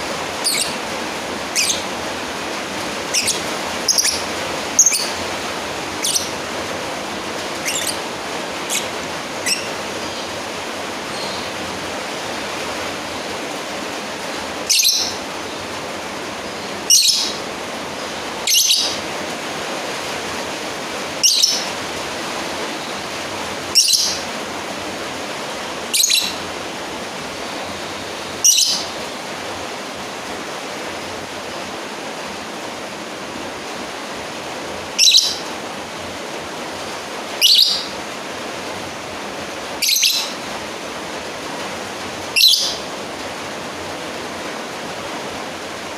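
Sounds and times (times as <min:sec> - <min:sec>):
steady hiss: 0:00.0 - 0:45.9
lovebird shrill calls: 0:00.4 - 0:00.8, 0:01.5 - 0:01.9, 0:03.0 - 0:05.2, 0:05.9 - 0:06.4, 0:07.6 - 0:10.3, 0:14.7 - 0:15.2, 0:16.9 - 0:17.4, 0:18.4 - 0:19.0, 0:21.2 - 0:21.7, 0:23.7 - 0:24.2, 0:25.9 - 0:26.4, 0:28.4 - 0:28.9, 0:35.0 - 0:35.4, 0:37.4 - 0:38.0, 0:39.8 - 0:40.4, 0:42.3 - 0:42.8.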